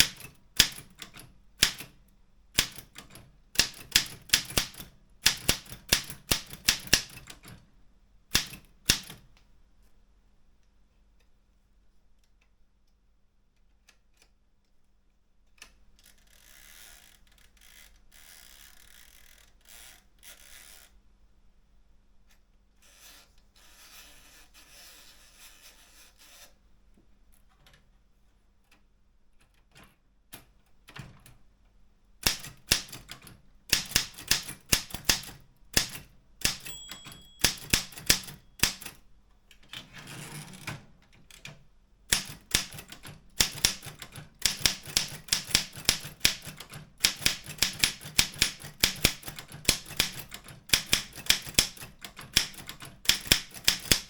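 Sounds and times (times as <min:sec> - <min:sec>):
manual typewriter typing: 0:00.0 - 0:02.0, 0:02.6 - 0:07.6, 0:08.3 - 0:09.3, 0:32.2 - 0:39.0, 0:39.7 - 0:54.0
typewriter scraping: 0:39.8 - 0:40.8, 0:42.1 - 0:54.0.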